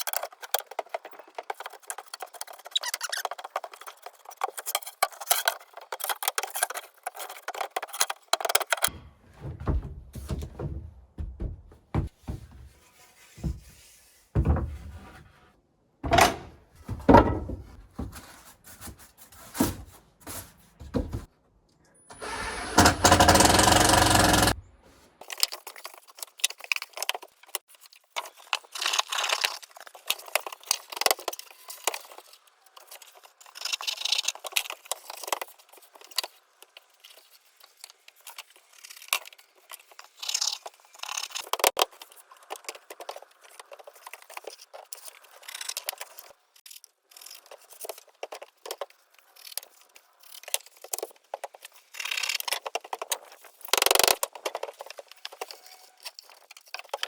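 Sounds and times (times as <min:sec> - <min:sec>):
knocks and scrapes on wooden boards: 0:00.0 - 0:21.3.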